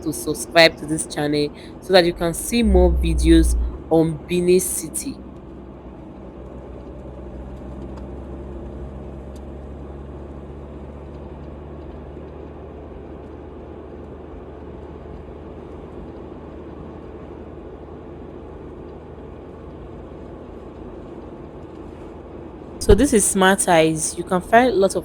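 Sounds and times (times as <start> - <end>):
car engine hum: 1.6 - 5.1.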